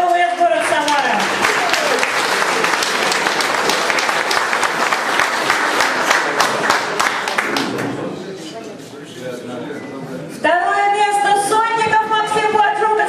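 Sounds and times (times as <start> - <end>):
audience applauding: 0.4 - 8.1.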